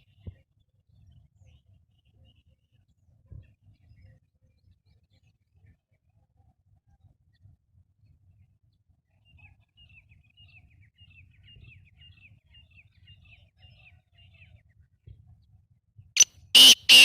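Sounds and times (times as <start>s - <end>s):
faint bird chirps: 16.6s - 17.0s.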